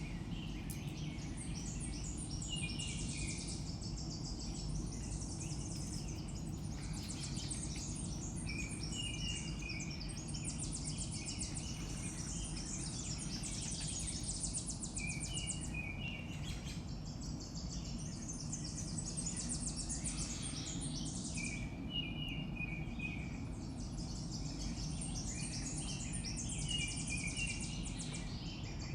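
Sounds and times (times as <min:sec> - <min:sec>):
birds chirping: 0:00.0 - 0:22.6
steady low hum: 0:00.0 - 0:28.9.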